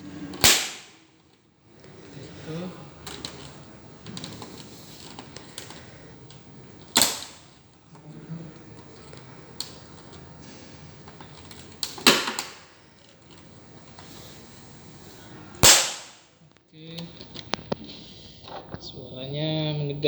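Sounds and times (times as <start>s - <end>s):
plastic clips snapping into place: 0.4s - 1.0s, 7.0s - 7.5s, 11.3s - 12.7s
plastic clicking and creaking: 3.0s - 10.4s, 11.0s - 14.1s.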